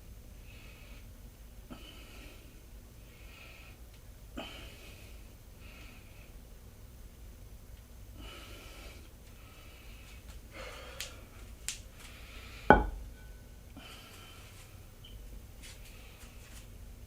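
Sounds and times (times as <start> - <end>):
person breathing hard: 8.2 - 11.4, 12.0 - 13.0
metal clank with ring: 12.7 - 13.4.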